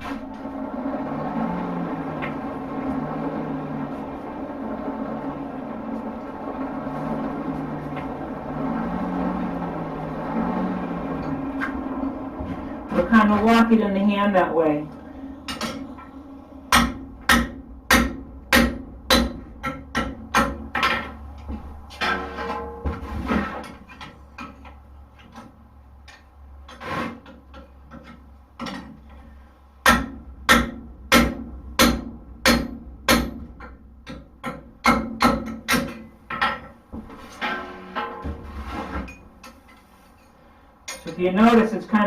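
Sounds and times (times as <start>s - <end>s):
hammer striking steel on anvil: 16.7s - 21.1s, 29.8s - 36.6s.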